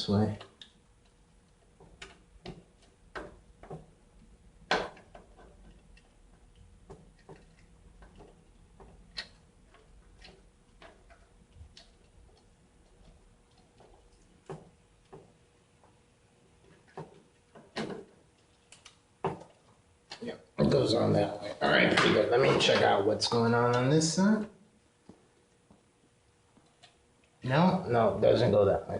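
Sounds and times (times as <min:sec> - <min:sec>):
cpu cooler clicks and taps: 0:00.4 - 0:04.0, 0:04.6 - 0:15.3.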